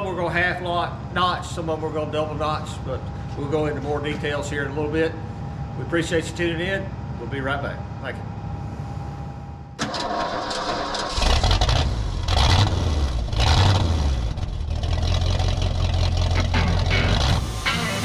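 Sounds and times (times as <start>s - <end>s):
engine starting and revving: 9.8s - 18.0s.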